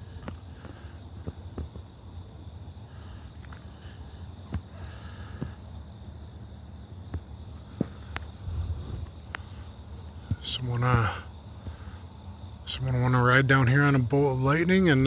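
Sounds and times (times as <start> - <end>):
crickets chirping: 0.0 - 15.0.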